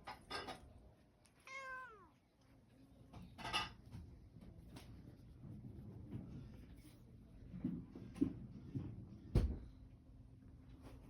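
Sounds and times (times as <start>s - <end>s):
cat meowing: 1.4s - 2.2s.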